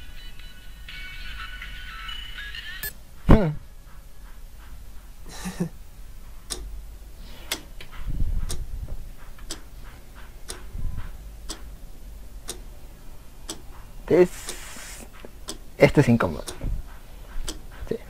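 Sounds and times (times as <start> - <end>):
clock ticking: 6.4 - 6.8, 9.4 - 11.8, 12.4 - 12.7, 13.4 - 13.8, 15.4 - 17.8.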